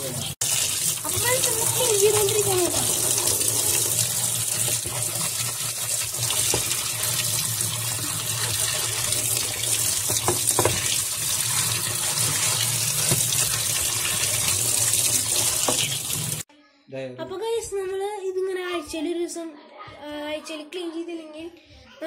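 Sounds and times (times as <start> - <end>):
water splashing in washing machine tub: 0.0 - 16.4.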